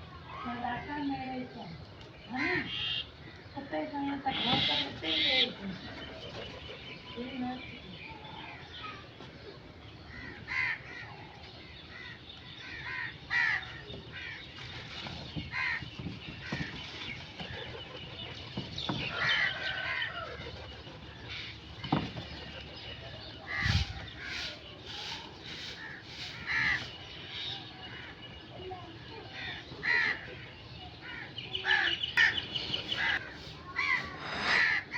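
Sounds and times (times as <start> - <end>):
crows cawing: 10.1 - 11.2, 11.9 - 14.5, 15.5 - 15.8, 25.8 - 27.0, 29.4 - 30.4, 33.0 - 34.9.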